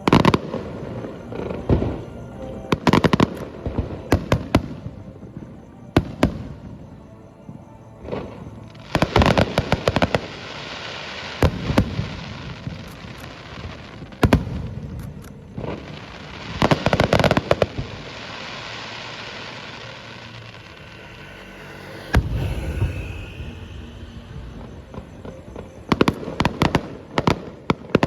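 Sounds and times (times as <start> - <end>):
firework crackling: 15.8 - 27.4.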